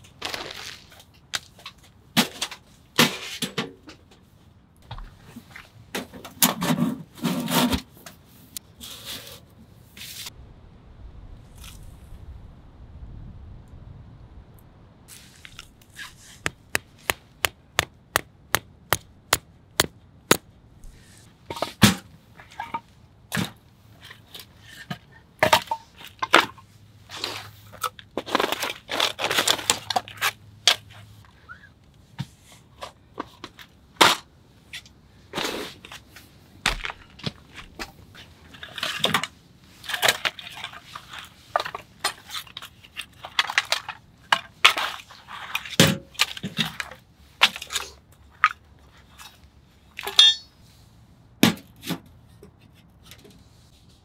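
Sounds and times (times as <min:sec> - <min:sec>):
cracking and crunching: 0:00.0 - 0:02.7, 0:27.2 - 0:30.9.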